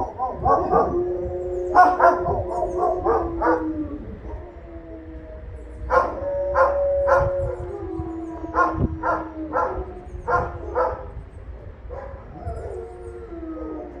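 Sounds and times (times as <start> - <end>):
dog barking: 0.0 - 0.9, 1.8 - 3.6, 8.6 - 11.1, 11.9 - 12.2
distant electronic sirens: 0.0 - 14.0.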